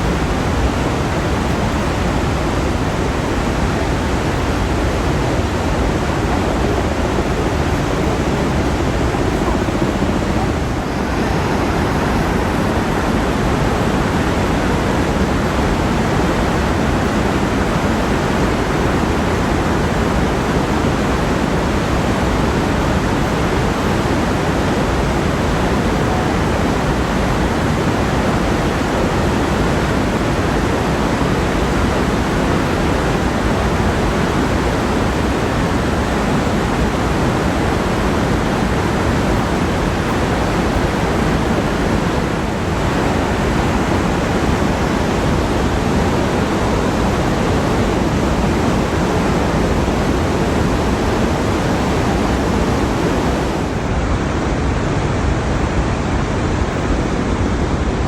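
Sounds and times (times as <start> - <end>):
waterfall rushing: 0.0 - 54.4.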